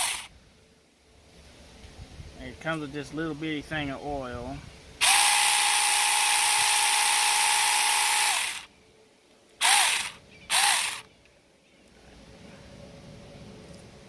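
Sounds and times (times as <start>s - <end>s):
electric chainsaw whine: 0.0s - 0.3s, 5.0s - 8.7s, 9.6s - 11.1s.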